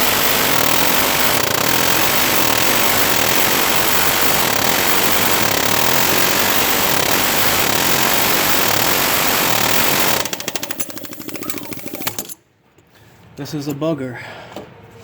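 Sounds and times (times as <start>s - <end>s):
loud power tool running: 0.0s - 12.4s
power tool rattling strokes: 0.0s - 12.4s.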